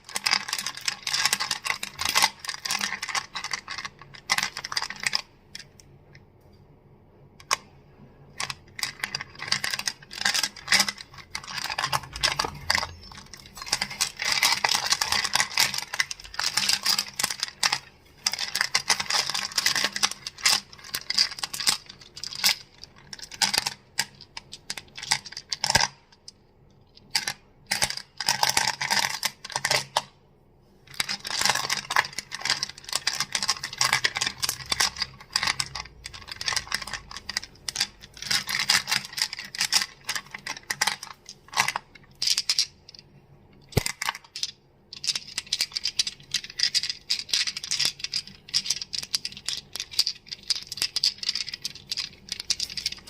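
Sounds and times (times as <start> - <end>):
crystals clicking together: 31.1 - 43.0, 43.6 - 53.0.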